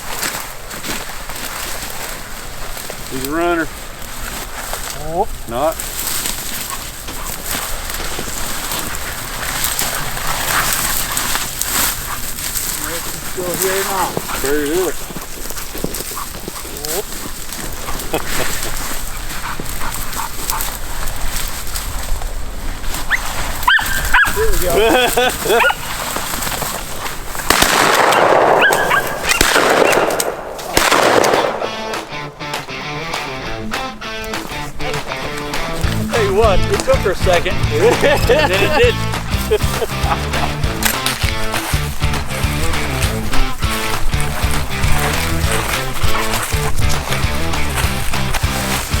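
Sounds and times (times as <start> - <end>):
footsteps in snow and brush: 0.0 - 49.0
small crackles: 0.0 - 49.0
shotgun shots: 27.4 - 32.7
guitar music: 31.3 - 49.0.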